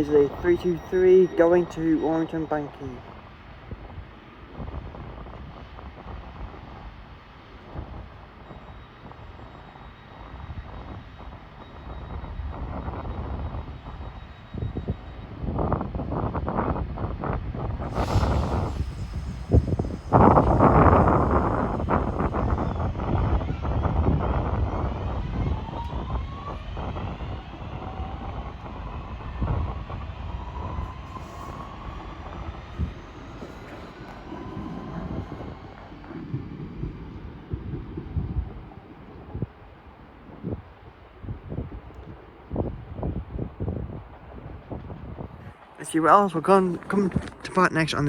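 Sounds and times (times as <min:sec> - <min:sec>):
electric train pulling away: 0:00.0 - 0:03.5, 0:08.3 - 0:40.2
wind buffeting microphone: 0:00.0 - 0:09.5, 0:10.1 - 0:48.0
wheels rumbling on rail: 0:00.0 - 0:48.0.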